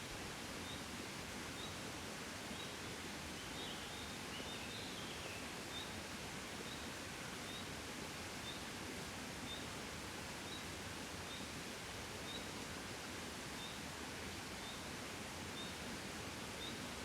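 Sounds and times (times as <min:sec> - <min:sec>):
gentle breeze: 0:00.0 - 0:17.0.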